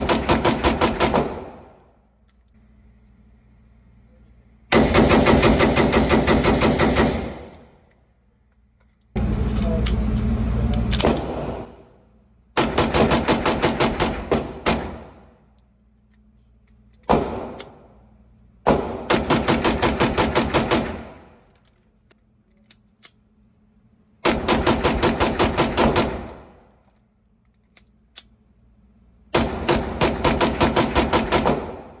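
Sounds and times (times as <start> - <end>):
airsoft gun firing bursts: 0.0 - 1.6, 4.7 - 7.5, 12.6 - 15.2, 18.7 - 21.2, 24.2 - 26.5, 29.4 - 32.0.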